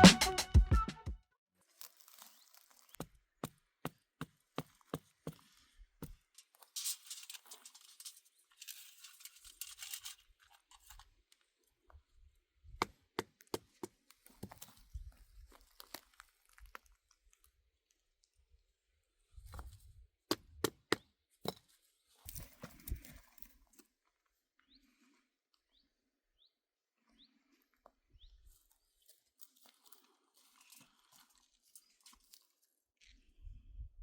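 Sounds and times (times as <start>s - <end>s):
rustling or tearing: 1.6s - 3.0s.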